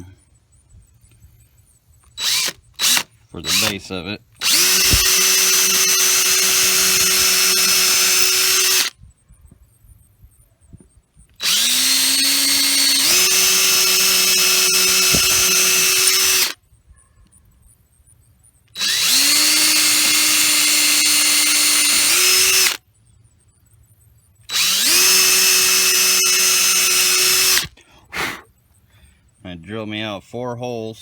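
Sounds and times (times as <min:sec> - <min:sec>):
power drill whining: 0:02.0 - 0:08.9, 0:11.3 - 0:16.6, 0:18.7 - 0:22.8, 0:24.5 - 0:27.8.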